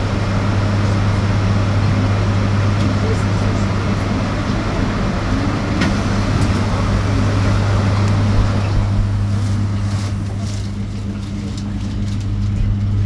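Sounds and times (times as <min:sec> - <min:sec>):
electric bus hum: 0:00.0 - 0:13.0
road and body noise: 0:05.8 - 0:11.4.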